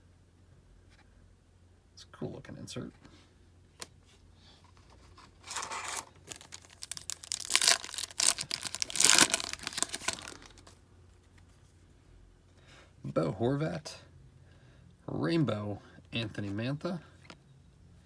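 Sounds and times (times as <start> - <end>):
wrapper tearing and crinkling: 5.3 - 10.8.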